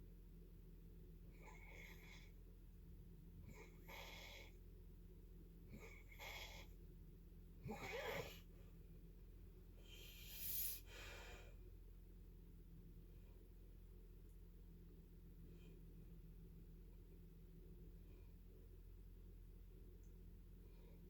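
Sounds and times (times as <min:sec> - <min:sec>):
sleeping person breathing loudly: 0:09.8 - 0:11.6.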